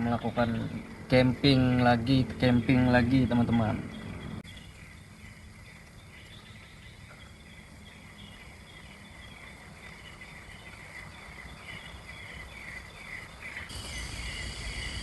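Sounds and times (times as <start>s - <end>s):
low steady rumble: 0.0s - 6.1s, 13.7s - 15.0s.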